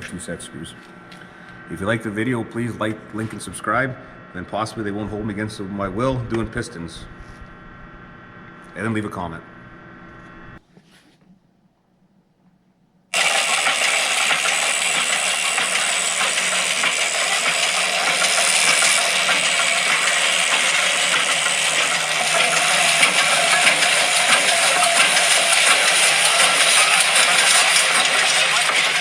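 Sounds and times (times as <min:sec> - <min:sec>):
machine mechanical clatter: 0:13.2 - 0:29.0.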